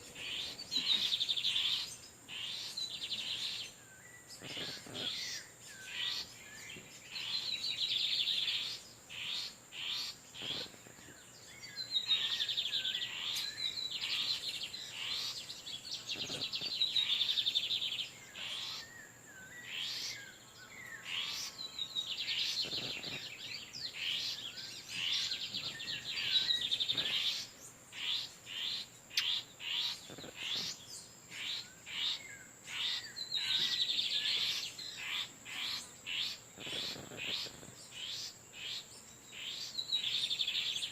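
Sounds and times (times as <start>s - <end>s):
buzzy bird trills: 0.0s - 10.8s, 20.9s - 40.9s.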